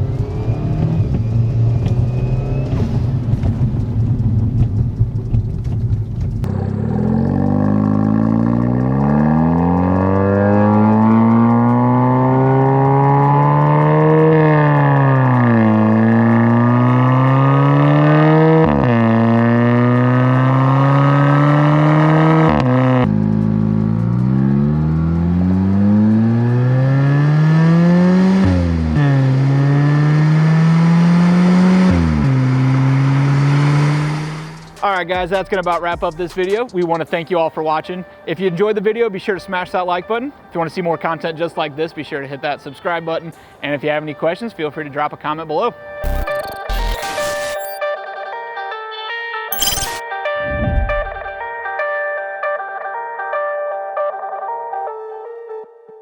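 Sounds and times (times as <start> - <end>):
car engine accelerating: 0.0 - 36.9, 46.0 - 47.8, 49.5 - 51.5
rough engine sound: 0.0 - 36.9, 46.0 - 47.8.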